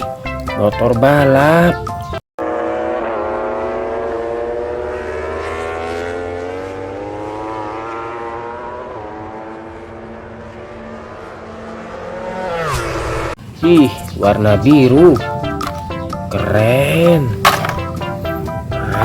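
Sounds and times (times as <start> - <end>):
motorcycle engine revving: 2.4 - 13.6, 15.0 - 19.0.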